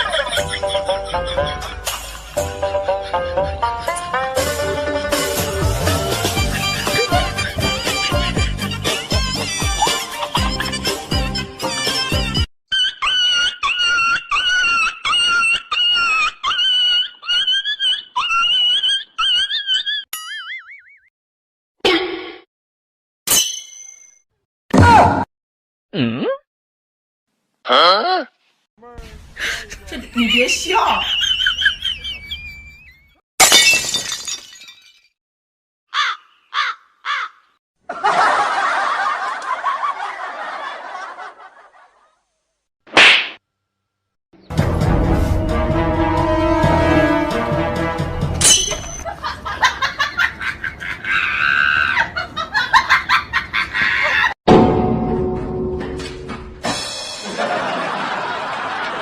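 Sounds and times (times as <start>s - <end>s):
burst of laughter: 37.9s - 42.2s, 57.2s - 59.0s.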